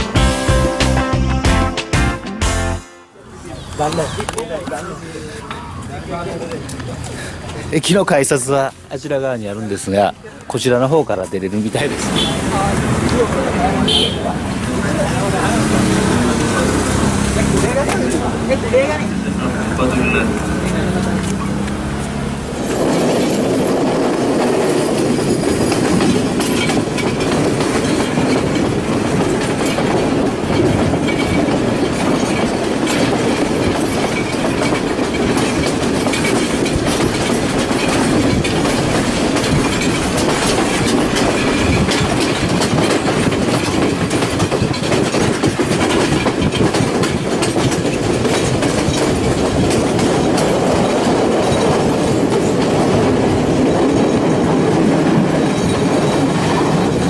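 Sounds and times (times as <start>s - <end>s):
train rumbling on track: 11.7s - 57.0s
wheel clicks and rattles: 25.7s - 53.0s.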